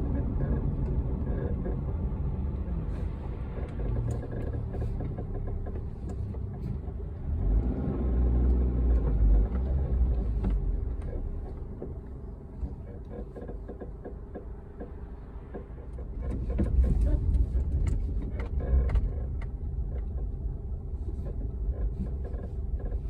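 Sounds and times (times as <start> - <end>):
car engine rumbling: 0.0 - 23.0.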